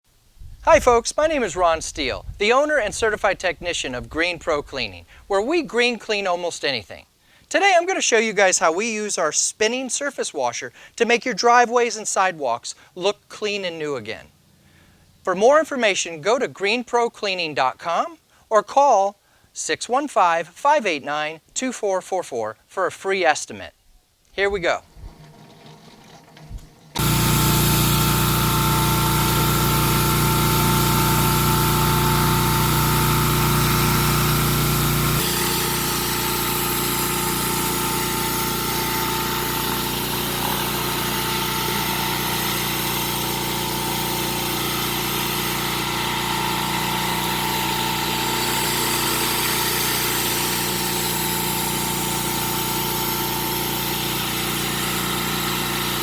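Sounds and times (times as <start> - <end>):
pressure washer engine hum: 25.0 - 56.0
high-pressure water hissing: 27.0 - 56.0.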